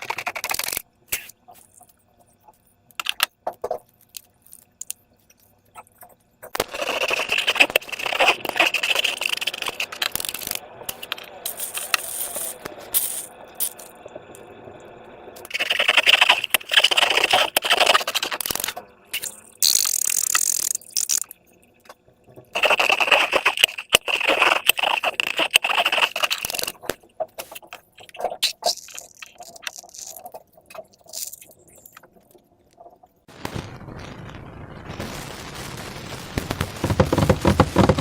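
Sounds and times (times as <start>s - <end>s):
slime and balloons crackling: 0.0s - 1.8s, 6.5s - 13.9s, 15.5s - 21.3s, 22.5s - 32.2s, 32.8s - 38.0s
small clicks: 0.0s - 14.4s, 15.4s - 22.0s.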